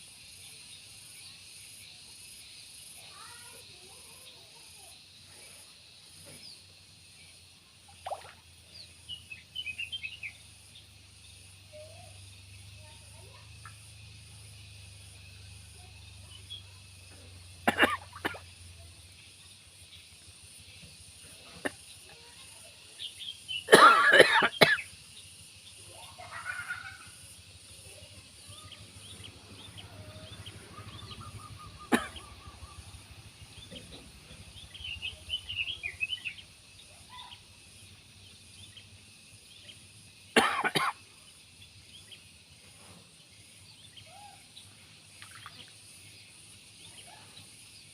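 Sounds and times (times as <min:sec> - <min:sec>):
high insect drone: 0:00.0 - 0:47.9
bird chirps: 0:08.0 - 0:10.4, 0:28.5 - 0:36.5.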